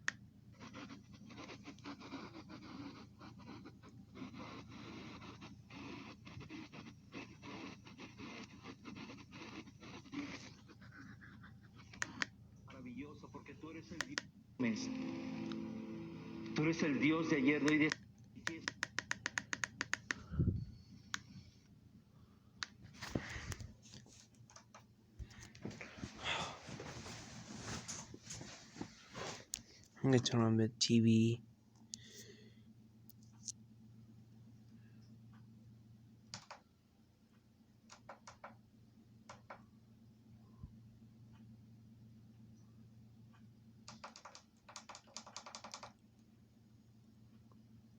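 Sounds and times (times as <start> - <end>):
low electrical hum: 0.0 - 47.9
sharp clicks: 17.6 - 20.2.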